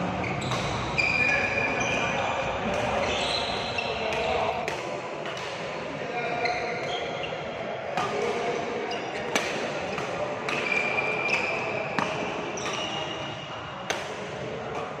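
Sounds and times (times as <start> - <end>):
shoe squeaks: 0.2 - 2.2, 3.0 - 4.3, 6.3 - 7.4, 10.6 - 11.6, 12.6 - 13.2
rackets hitting shuttlecock: 0.4 - 2.0, 2.6 - 5.8, 6.7 - 15.0.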